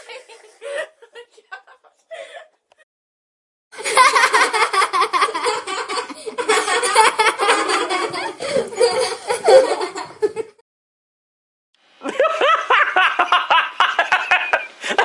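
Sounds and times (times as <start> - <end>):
hysterical human laughter: 3.8 - 10.6, 12.0 - 15.0.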